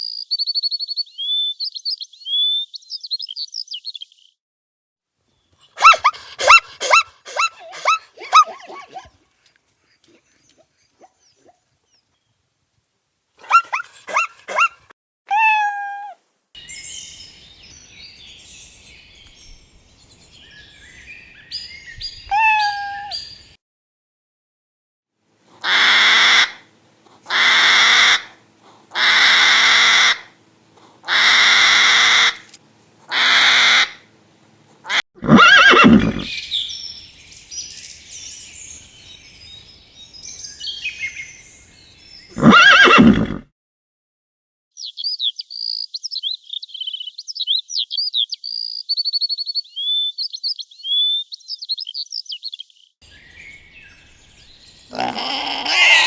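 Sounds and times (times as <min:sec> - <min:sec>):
harsh animal calls: 0:05.6 - 0:09.0, 0:22.3 - 0:23.2, 0:35.2 - 0:36.4, 0:42.3 - 0:43.4, 0:53.6 - 0:56.0
songbird chirping: 0:15.3 - 0:23.6, 0:35.8 - 0:43.2, 0:51.6 - 0:56.0
horse whinnies: 0:22.3 - 0:23.2, 0:35.2 - 0:36.3, 0:42.4 - 0:43.4, 0:54.9 - 0:56.0.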